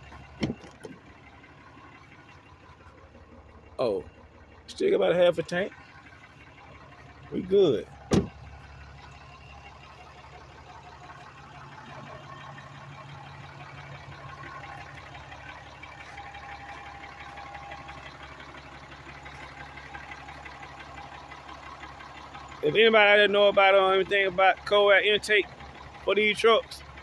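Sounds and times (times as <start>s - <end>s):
pickup truck engine idling: 0.0s - 27.0s.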